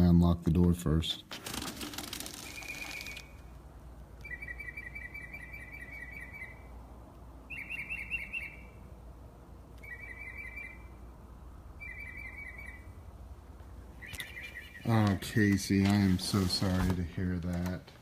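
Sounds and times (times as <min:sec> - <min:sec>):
bird singing: 0:02.3 - 0:03.6, 0:04.2 - 0:06.8, 0:07.4 - 0:08.9, 0:09.8 - 0:11.1, 0:11.7 - 0:13.2, 0:13.8 - 0:16.3.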